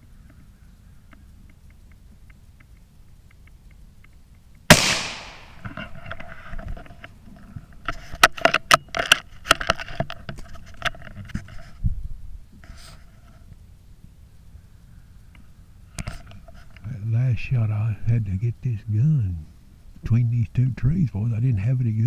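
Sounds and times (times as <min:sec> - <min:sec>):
rifle shot: 0:04.7 - 0:05.7.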